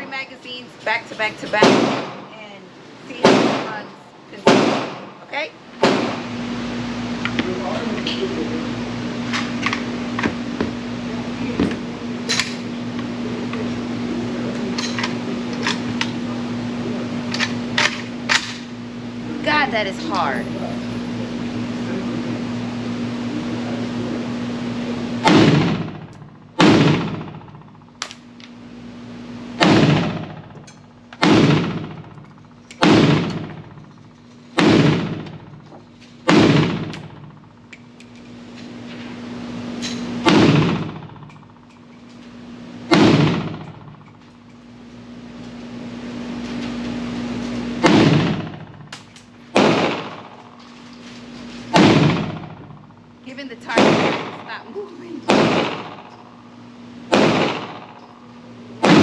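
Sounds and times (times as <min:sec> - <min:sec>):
steady low hum: 0:00.0 - 0:59.0
pistol shots: 0:01.6 - 0:02.3, 0:04.4 - 0:05.2, 0:05.8 - 0:06.3, 0:25.2 - 0:28.2, 0:29.6 - 0:30.6, 0:31.2 - 0:32.2, 0:32.8 - 0:33.8, 0:34.6 - 0:35.6, 0:36.3 - 0:37.4, 0:40.2 - 0:41.3, 0:42.9 - 0:44.0, 0:47.8 - 0:50.6, 0:51.7 - 0:52.8, 0:53.8 - 0:54.5, 0:55.2 - 0:56.5, 0:57.1 - 0:59.0.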